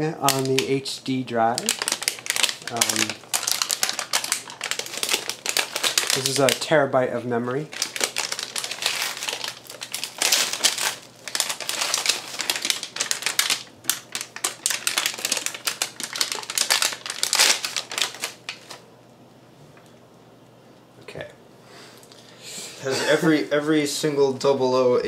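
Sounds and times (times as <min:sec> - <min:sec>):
plastic bag crinkling: 0:00.2 - 0:18.8.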